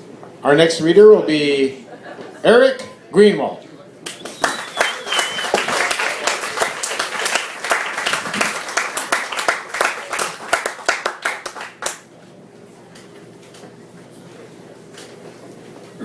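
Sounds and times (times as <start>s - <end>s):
small audience clapping: 4.0s - 12.1s.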